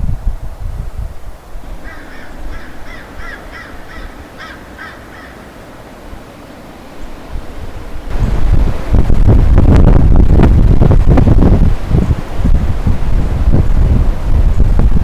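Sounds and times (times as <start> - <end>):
wind rumble on microphone: 0.0 - 5.3, 6.1 - 15.0
bird calling: 1.6 - 8.1.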